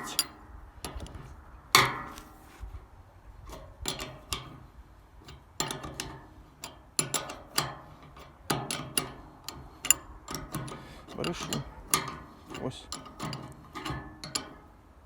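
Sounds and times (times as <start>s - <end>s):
metallic clicks of hand tools: 0.0s - 1.2s, 3.5s - 4.6s, 5.2s - 14.7s.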